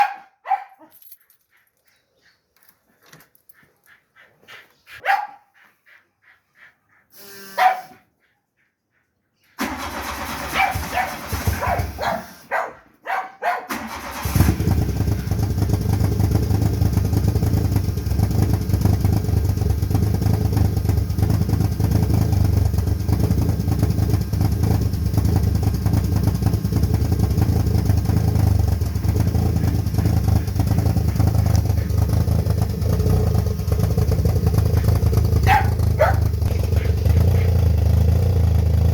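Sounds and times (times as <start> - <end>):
dogs barking: 0.0 - 1.8, 3.6 - 14.0, 28.7 - 32.6, 34.5 - 37.7
car engine rough idle: 13.9 - 38.9.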